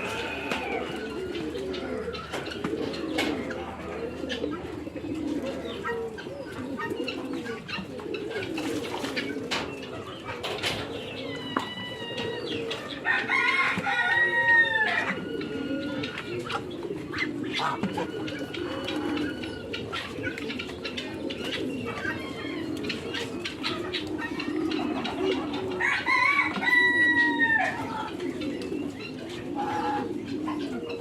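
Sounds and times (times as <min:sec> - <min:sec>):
flock of birds cooing: 0:00.0 - 0:31.0.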